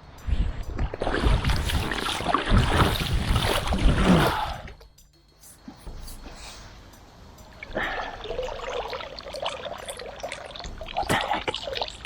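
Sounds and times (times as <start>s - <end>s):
water dripping: 0.2s - 5.0s, 7.4s - 12.0s
water splashing and trickling: 0.3s - 5.0s, 7.5s - 12.0s.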